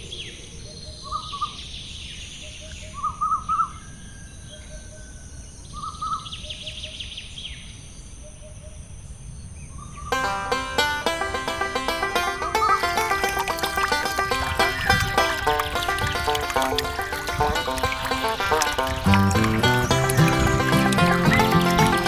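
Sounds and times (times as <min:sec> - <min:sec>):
birds chirping: 0:10.2 - 0:22.0.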